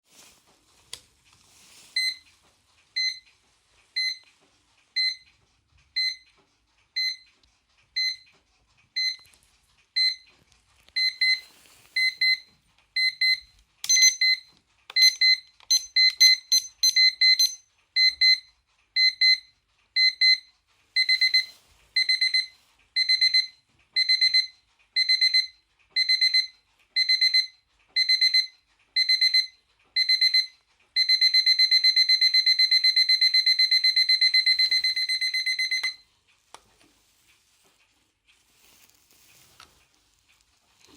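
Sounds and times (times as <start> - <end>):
alarm clock beeping: 2.0 - 2.3, 3.0 - 3.3, 4.0 - 4.3, 5.0 - 5.3, 6.0 - 6.3, 7.0 - 7.3, 8.0 - 8.3, 9.0 - 9.3, 10.0 - 10.3, 11.0 - 36.2.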